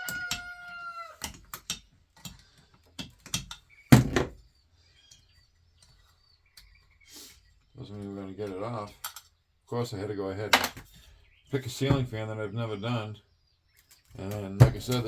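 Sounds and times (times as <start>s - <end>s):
metal clicks and knocks: 1.2s - 4.4s, 14.2s - 15.0s
heavy thunk: 3.9s - 4.4s, 11.9s - 12.1s.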